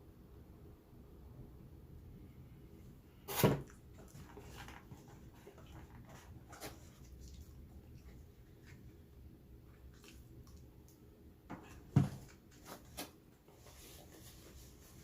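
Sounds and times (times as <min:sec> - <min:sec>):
chewing and smacking: 0:09.7 - 0:11.0.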